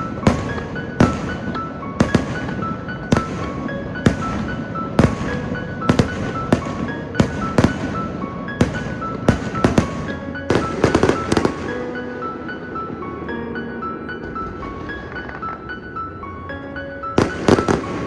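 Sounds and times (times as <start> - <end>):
fireworks bangs echoing: 0.0 - 12.1, 17.2 - 18.0.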